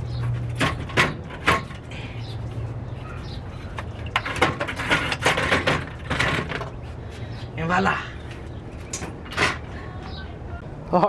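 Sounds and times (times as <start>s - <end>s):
clicks and scraping knocks: 0.2s - 1.9s, 3.5s - 6.8s.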